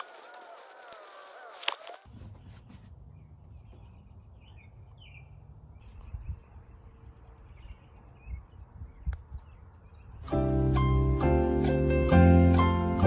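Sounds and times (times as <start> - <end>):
small birds chirping: 0.0 - 10.3.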